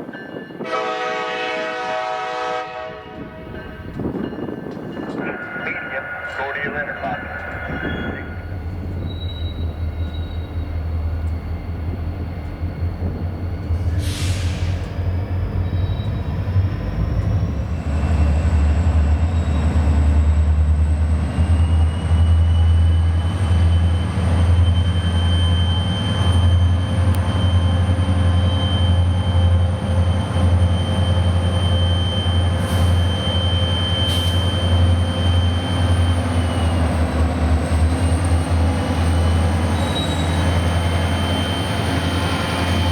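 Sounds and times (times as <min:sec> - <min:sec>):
locomotive engine rumble: 0:03.2 - 0:42.9
steel wheels squealing: 0:07.5 - 0:18.2, 0:21.4 - 0:42.9.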